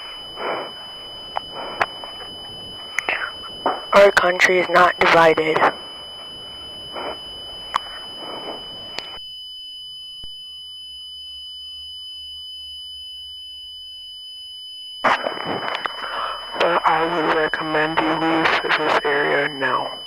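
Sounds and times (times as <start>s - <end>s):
person speaking: 1.5s - 5.8s, 16.6s - 20.0s.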